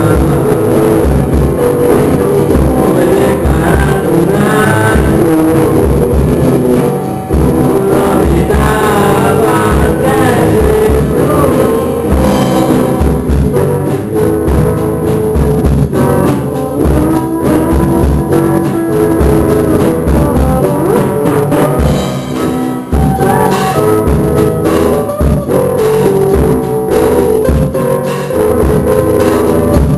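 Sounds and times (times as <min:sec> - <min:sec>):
person singing: 0:00.0 - 0:13.3, 0:16.1 - 0:29.9
drum kit beat: 0:00.0 - 0:29.9
guitar: 0:00.0 - 0:29.9.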